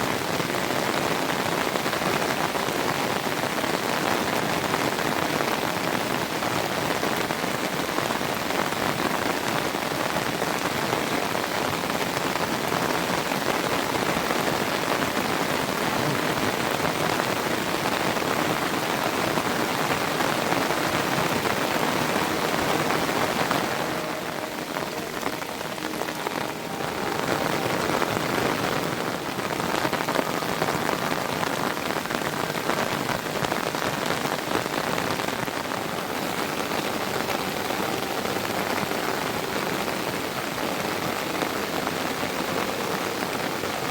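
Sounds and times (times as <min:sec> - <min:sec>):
heavy rain falling: 0:00.0 - 0:43.9.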